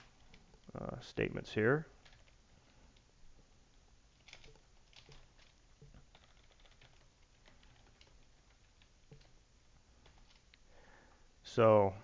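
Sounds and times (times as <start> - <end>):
faint keyboard typing: 0.0 - 0.8, 1.8 - 3.1, 4.1 - 10.6.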